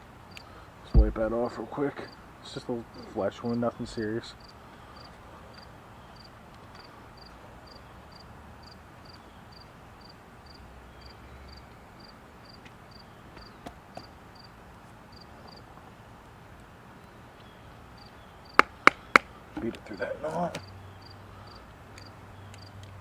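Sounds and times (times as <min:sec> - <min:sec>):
faint background hiss: 0:00.0 - 0:23.0
insect chirping: 0:04.4 - 0:05.6, 0:06.2 - 0:14.5, 0:15.1 - 0:15.6, 0:18.0 - 0:19.2, 0:20.0 - 0:22.8.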